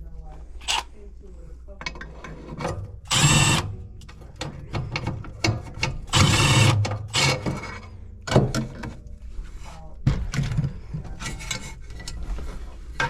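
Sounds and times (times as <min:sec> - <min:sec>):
cordless drill driving screws: 0:00.6 - 0:00.8, 0:03.1 - 0:03.7, 0:06.1 - 0:07.6.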